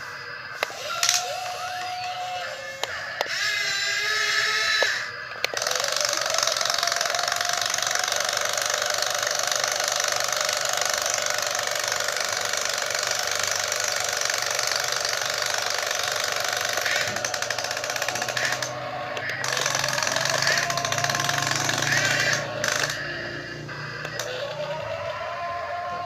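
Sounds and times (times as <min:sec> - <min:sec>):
hydraulic whine: 0:00.0 - 0:26.0
excavator mechanical clatter: 0:04.7 - 0:25.2.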